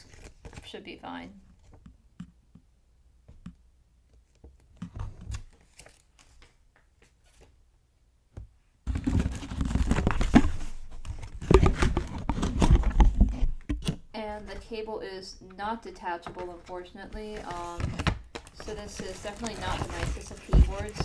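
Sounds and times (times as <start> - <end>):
packaging crinkling and rustling: 8.9 - 14.0, 16.2 - 21.0
packaging clicks: 17.3 - 21.0.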